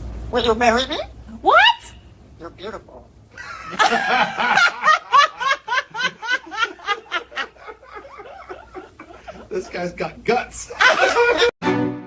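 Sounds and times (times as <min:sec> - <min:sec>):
person laughing: 0:03.4 - 0:09.8, 0:10.7 - 0:11.5.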